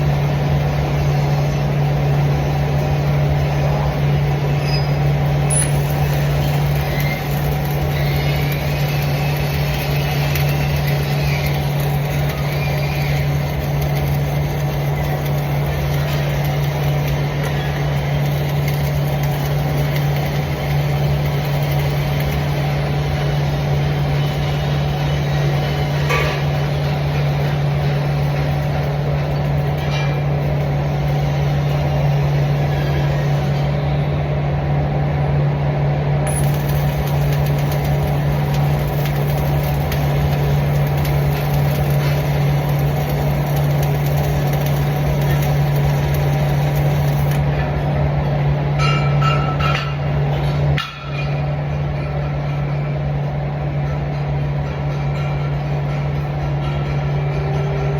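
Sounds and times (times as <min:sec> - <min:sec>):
machine humming steadily: 0:00.0 - 0:57.9.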